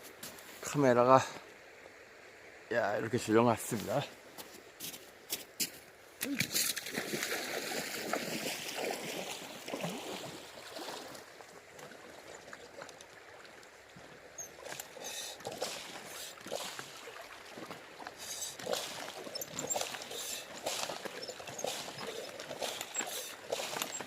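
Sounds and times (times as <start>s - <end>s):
river water trickling: 0.0s - 24.0s
knocks and splashes in water: 6.2s - 24.0s.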